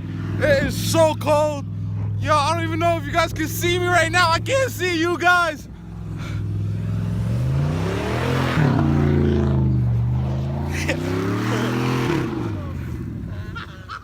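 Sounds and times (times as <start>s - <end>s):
car engine revving: 0.0s - 14.0s.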